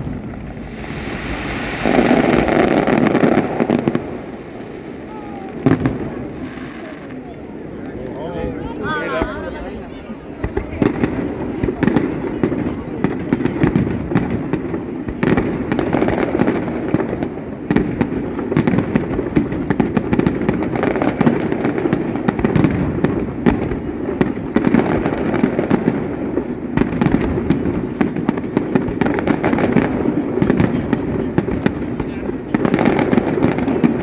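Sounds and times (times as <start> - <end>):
fireworks crackle and bangs: 0.0 - 34.0.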